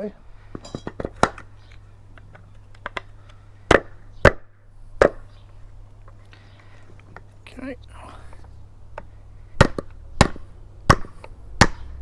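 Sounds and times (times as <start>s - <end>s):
hard knocks of plastic parts: 9.0s - 11.9s.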